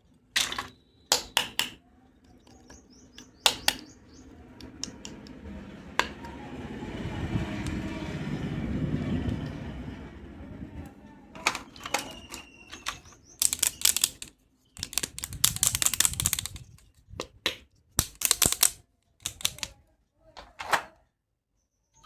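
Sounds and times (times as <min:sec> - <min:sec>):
plastic toys clicking and clattering: 0:00.0 - 0:03.9, 0:11.3 - 0:21.0.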